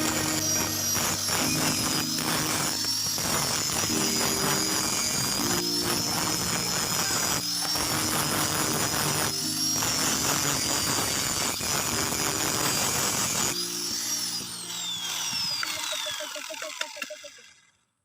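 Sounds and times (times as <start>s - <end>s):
angle grinder grinding steel: 0.0s - 17.6s.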